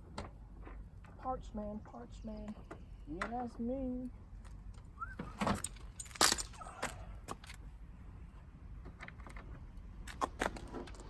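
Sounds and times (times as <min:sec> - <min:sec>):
light metallic clicks and jangles: 0:05.5 - 0:07.6.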